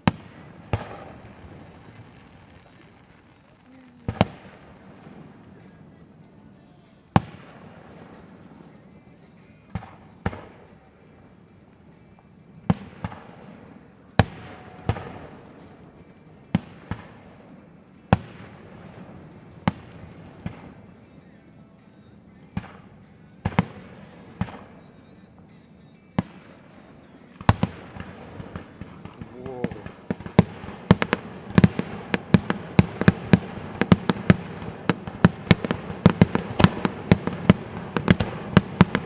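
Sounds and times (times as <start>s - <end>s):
fireworks booming: 0.0s - 39.0s.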